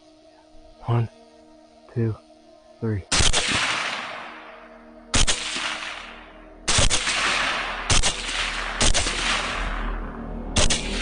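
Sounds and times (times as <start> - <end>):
rifle shots with rolling echo: 3.1 - 11.0.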